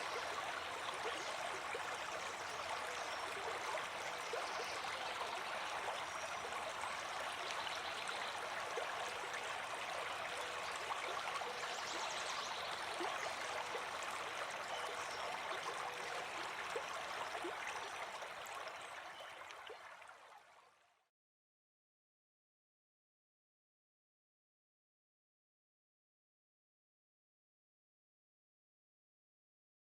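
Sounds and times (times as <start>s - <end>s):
stream babbling: 0.0s - 20.1s.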